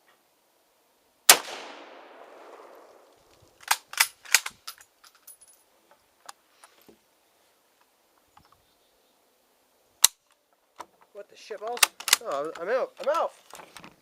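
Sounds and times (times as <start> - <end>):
rifle shot echoing: 1.3 - 3.2
gun action clicks: 11.6 - 12.6.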